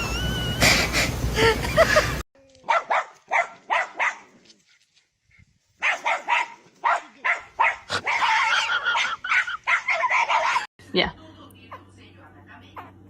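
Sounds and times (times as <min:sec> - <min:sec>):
dog barking: 0:02.7 - 0:04.3, 0:05.8 - 0:10.7.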